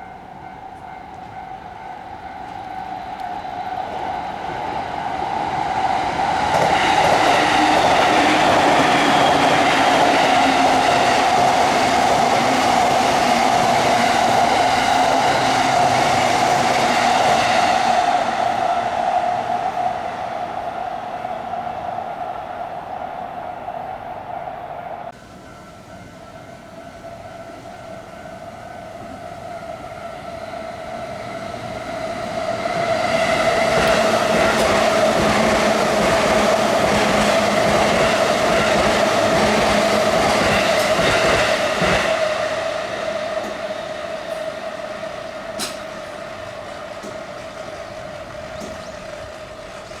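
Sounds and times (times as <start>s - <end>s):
crossing warning bell ringing: 0.0s - 4.9s
train clattering over crossing: 0.0s - 20.5s, 31.5s - 50.0s.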